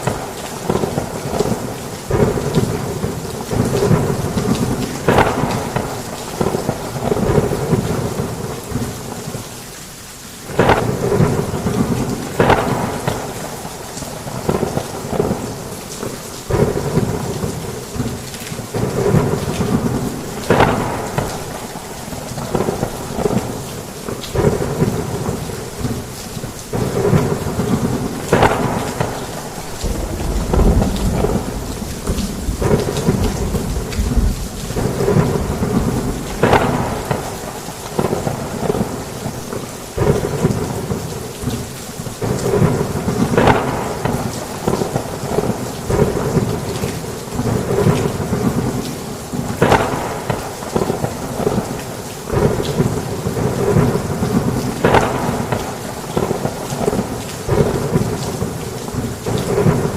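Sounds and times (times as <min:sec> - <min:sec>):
heavy rain falling: 0:00.0 - 0:59.9
sharp thunder crack: 0:10.5 - 0:13.6, 0:18.7 - 0:23.6, 0:26.7 - 0:39.0, 0:42.2 - 0:46.6
low thunder rumbling: 0:10.5 - 0:51.7.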